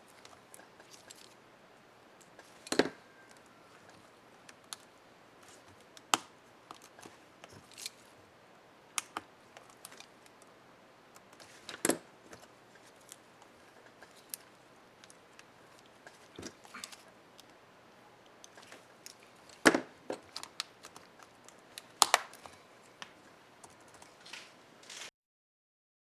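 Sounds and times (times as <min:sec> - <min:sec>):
plastic keycap clicks and snaps: 0:21.8 - 0:23.8.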